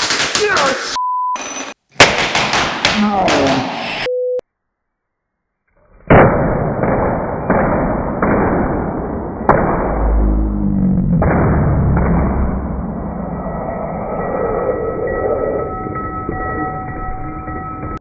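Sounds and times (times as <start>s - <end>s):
capacitors exploding with bangs: 6.0s - 13.4s.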